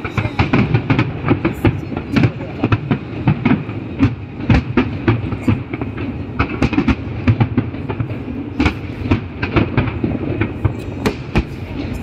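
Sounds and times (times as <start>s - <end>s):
fireworks bangs and crackles: 0.0s - 12.0s.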